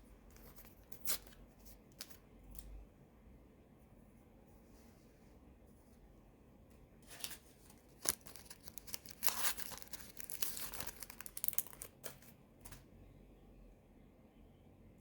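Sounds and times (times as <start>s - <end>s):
rustling and crinkling handling noise: 6.8s - 12.9s.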